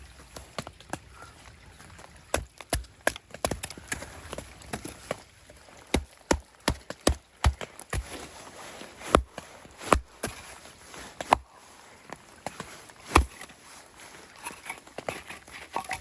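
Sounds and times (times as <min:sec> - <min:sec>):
sharp irregular knocks: 0:13.1 - 0:13.4.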